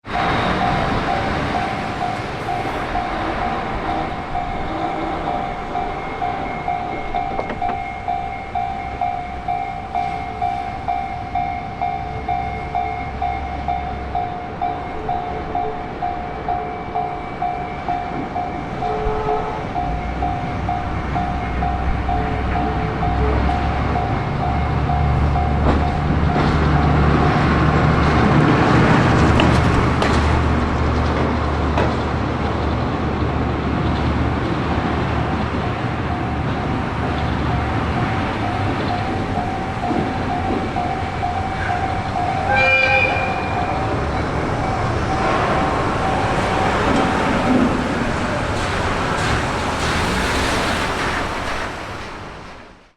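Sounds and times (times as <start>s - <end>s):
diesel locomotive engine: 0.0s - 52.9s
train wheels rumbling: 0.0s - 52.9s
locomotive horn toot: 0.1s - 7.7s, 18.8s - 25.0s, 41.6s - 44.2s
level crossing bell ringing: 0.1s - 26.5s, 36.1s - 47.1s.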